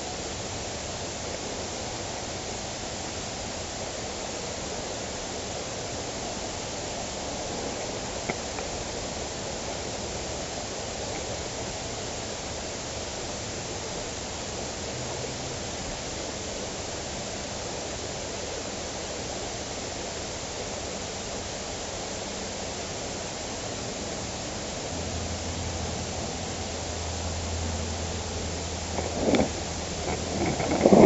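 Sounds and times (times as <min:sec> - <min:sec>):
low steady hum: 0:00.0 - 0:17.8, 0:22.7 - 0:31.0
steady rushing noise: 0:28.8 - 0:31.0.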